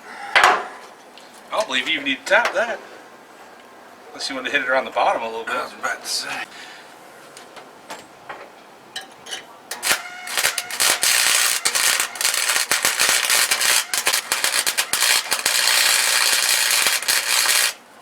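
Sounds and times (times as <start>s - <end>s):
welding arc crackling: 9.7s - 17.9s.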